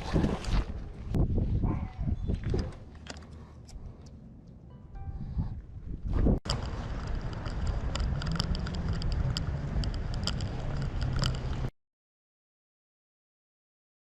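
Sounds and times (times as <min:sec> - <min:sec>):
road and engine rumble: 0:02.0 - 0:11.7
light clicks and rattles: 0:06.5 - 0:11.7.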